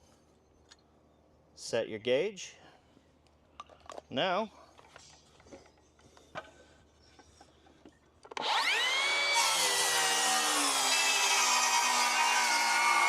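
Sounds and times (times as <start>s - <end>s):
circular saw cutting wood: 8.4s - 13.0s.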